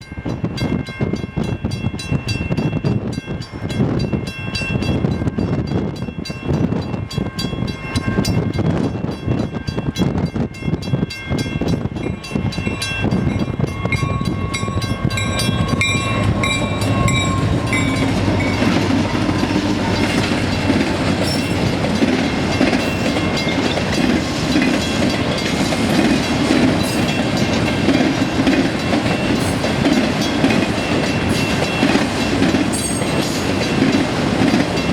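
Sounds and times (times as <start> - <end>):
diesel locomotive engines: 0.0 - 34.9
train wheels clattering: 0.3 - 34.9
train horn blasts: 13.6 - 21.6.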